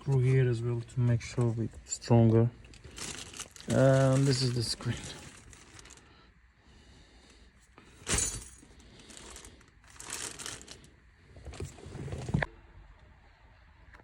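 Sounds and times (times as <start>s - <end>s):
plastic crinkling: 2.7s - 6.2s, 8.1s - 11.9s.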